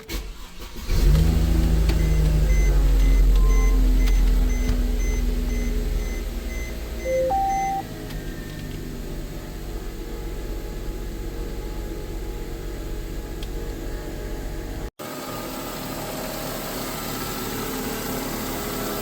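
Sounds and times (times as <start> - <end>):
car engine idling: 0.1 - 14.9
two-tone electronic beep: 2.0 - 7.8.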